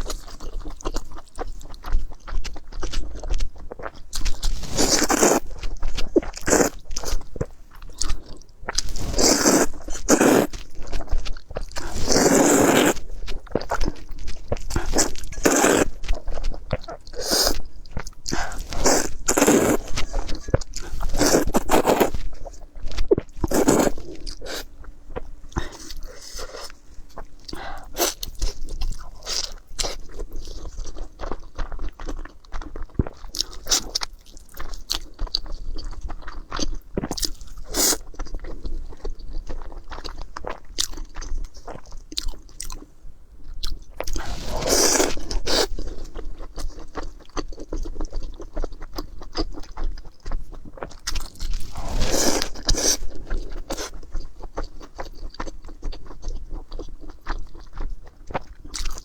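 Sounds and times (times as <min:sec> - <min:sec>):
person chewing crunchy food: 0:00.0 - 0:59.0.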